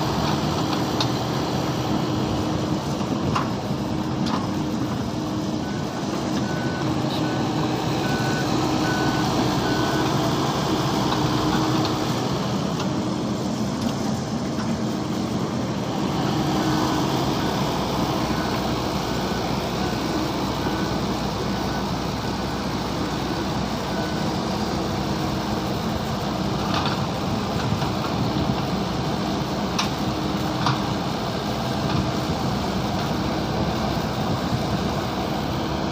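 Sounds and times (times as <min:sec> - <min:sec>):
diesel engine running: 0:00.0 - 0:35.9
travel alarm beeping: 0:05.6 - 0:10.5.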